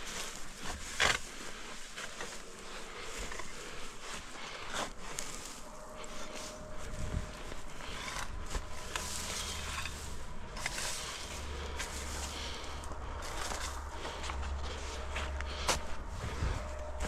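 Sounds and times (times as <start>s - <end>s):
footsteps: 0.0s - 17.0s
steady rustling: 0.0s - 17.0s
low rumble: 5.0s - 17.0s.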